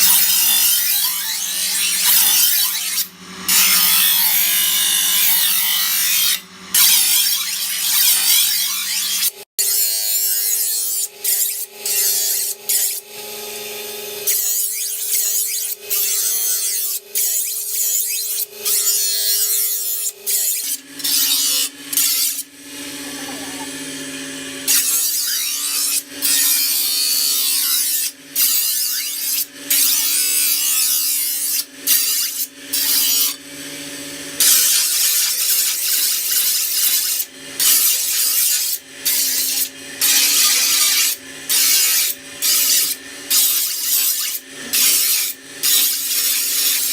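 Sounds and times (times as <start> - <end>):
file rasping on metal blade: 0.0 - 13.1, 14.2 - 23.9, 24.7 - 33.4, 34.4 - 46.9.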